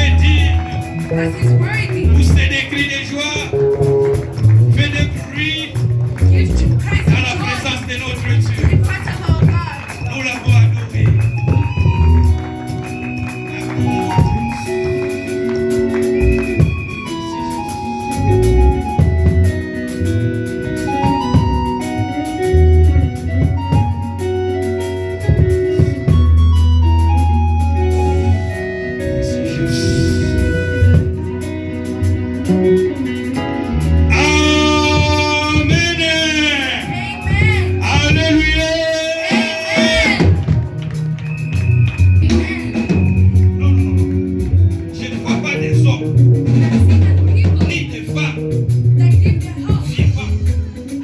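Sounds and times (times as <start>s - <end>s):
bass: 0.0s - 51.0s
keyboard chords: 0.0s - 51.0s
worship band playing: 0.0s - 51.0s
held lead note: 10.5s - 46.8s.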